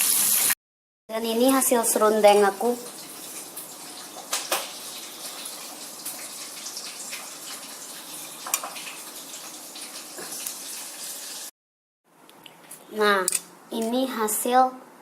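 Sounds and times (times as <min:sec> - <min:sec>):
chicken sizzling in hot oil: 0:00.0 - 0:00.6, 0:02.0 - 0:11.5.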